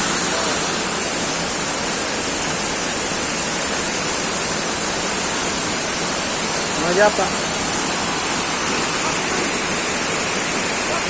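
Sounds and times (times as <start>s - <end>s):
waterfall roaring: 0.0s - 11.0s.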